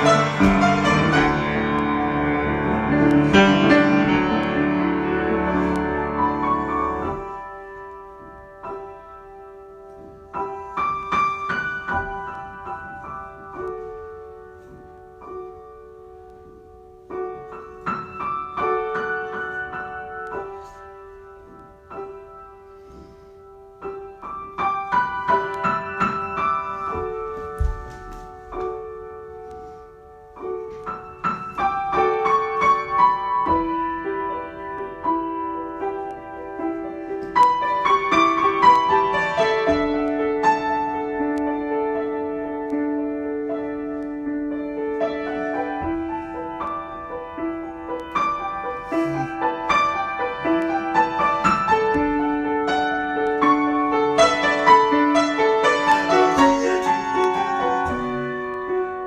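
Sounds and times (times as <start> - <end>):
solo piano improvisation: 0.0 - 59.0.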